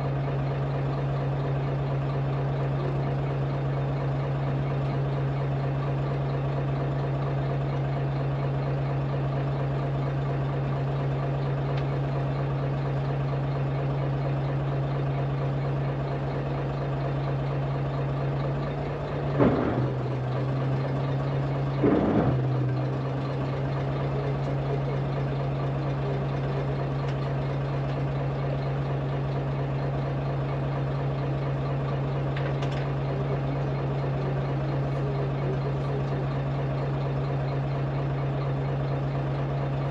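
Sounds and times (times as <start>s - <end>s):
boat engine idling: 0.0s - 39.9s.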